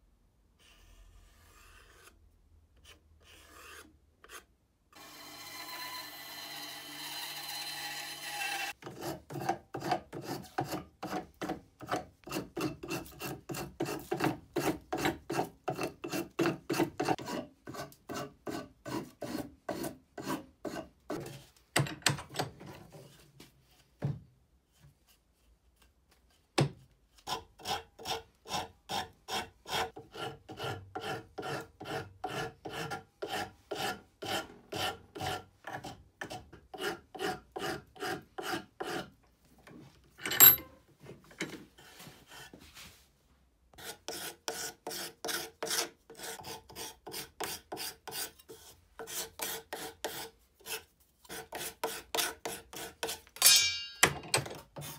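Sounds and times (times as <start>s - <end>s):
rasp filing wood: 2.8s - 4.5s, 8.7s - 21.4s, 27.2s - 39.2s, 43.8s - 53.3s, 54.6s - 54.9s.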